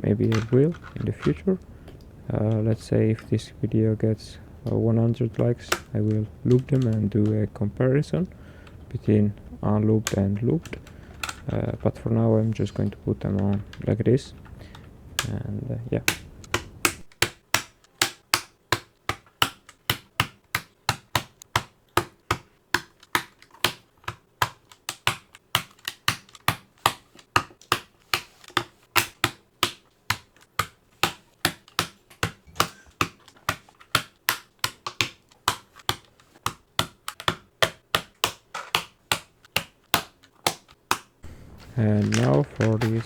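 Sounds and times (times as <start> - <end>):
keyboard switches clicking into sockets: 4.6 - 7.4.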